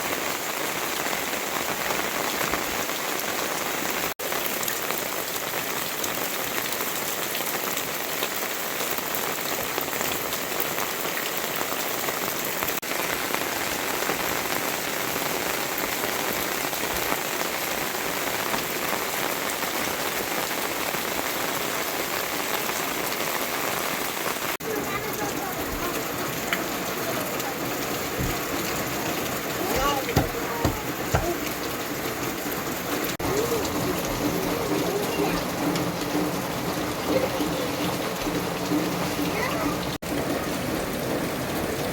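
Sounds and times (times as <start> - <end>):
steady rain falling: 0.0 - 41.9.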